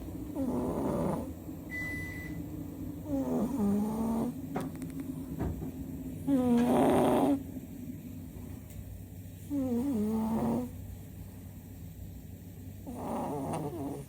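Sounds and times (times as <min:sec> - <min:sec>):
cat snoring: 0:00.3 - 0:01.4, 0:03.0 - 0:04.4, 0:06.2 - 0:07.5, 0:09.5 - 0:10.8, 0:12.8 - 0:14.0.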